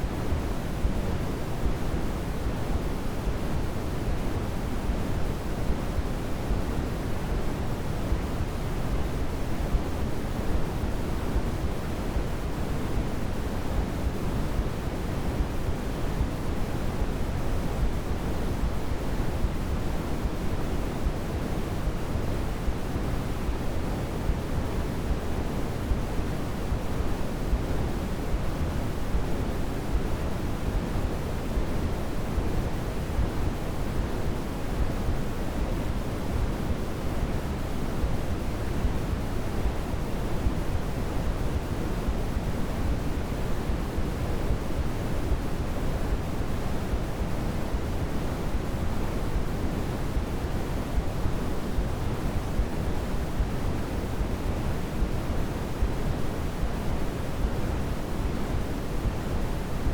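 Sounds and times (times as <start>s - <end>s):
white noise hiss: 0.0s - 59.9s.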